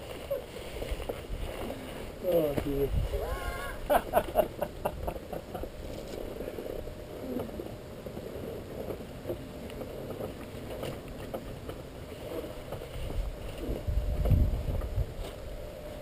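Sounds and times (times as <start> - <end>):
rustling and small knocks: 0.0 - 2.8, 4.1 - 15.8
low rumble: 12.4 - 16.0.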